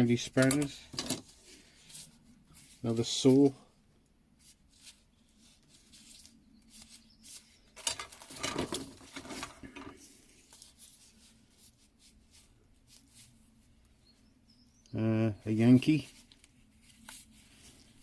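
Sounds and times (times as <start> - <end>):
rustling and clattering: 0.2 - 3.6, 4.4 - 13.9.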